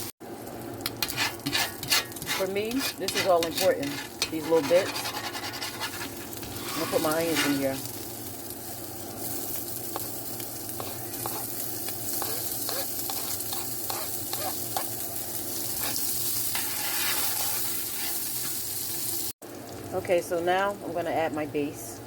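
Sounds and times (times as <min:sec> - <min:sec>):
onions sizzling in hot oil: 0:00.0 - 0:19.9
utensil scraping a pot: 0:00.9 - 0:07.9, 0:10.8 - 0:14.9, 0:15.7 - 0:18.5.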